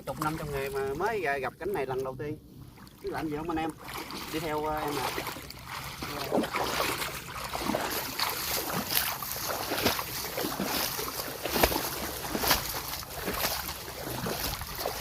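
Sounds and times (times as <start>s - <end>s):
footsteps splashing in shallow water: 0.0s - 15.0s
wind buffeting microphone: 10.5s - 15.0s.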